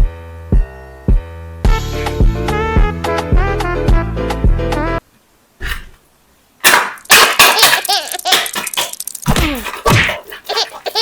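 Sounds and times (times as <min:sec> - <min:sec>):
high-pitched laughter: 0:07.1 - 0:11.0.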